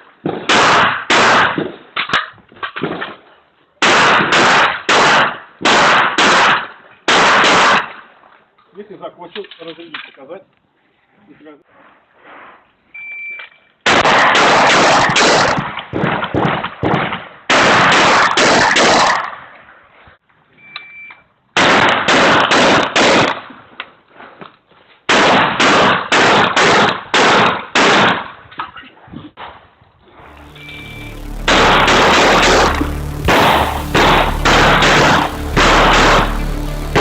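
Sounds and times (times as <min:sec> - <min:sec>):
shotgun firing rapid shots: 0:00.4 - 0:01.7, 0:03.8 - 0:07.9, 0:13.9 - 0:19.3, 0:21.6 - 0:23.4, 0:25.1 - 0:28.3, 0:33.3 - 0:37.0
shot timer beep: 0:20.6 - 0:21.2, 0:30.3 - 0:36.7.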